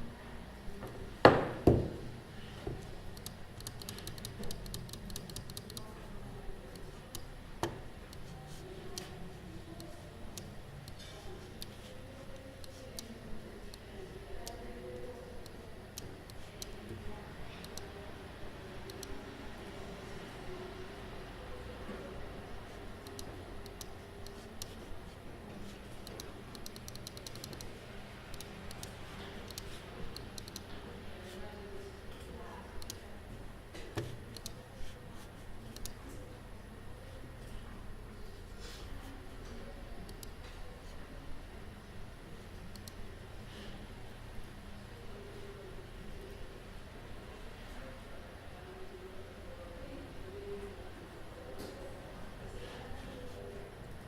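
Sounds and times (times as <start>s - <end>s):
room tone hum and hiss: 0.0s - 54.0s
light keyboard typing: 2.8s - 6.0s, 6.6s - 18.0s, 18.8s - 19.2s, 22.6s - 30.8s, 32.8s - 33.1s, 33.9s - 36.2s, 40.0s - 41.0s, 42.7s - 43.0s.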